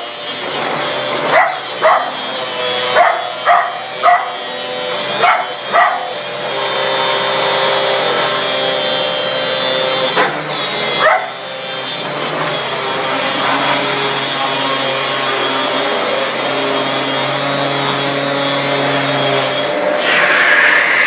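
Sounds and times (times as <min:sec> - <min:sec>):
vacuum cleaner running: 0:00.0 - 0:21.0
dog yelping: 0:01.2 - 0:06.3, 0:10.9 - 0:11.5.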